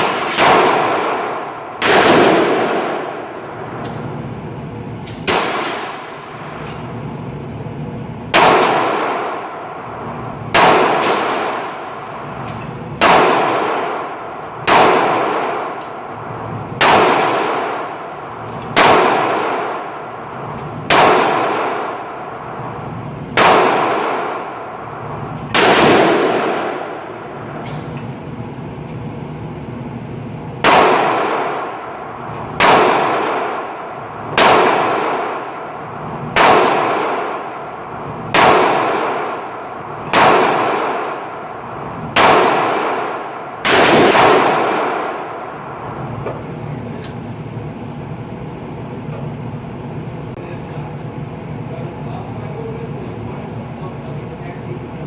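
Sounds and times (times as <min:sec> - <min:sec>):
rifle shots echoing: 0:00.0 - 0:04.2, 0:05.2 - 0:06.6, 0:08.3 - 0:28.3, 0:30.6 - 0:46.1.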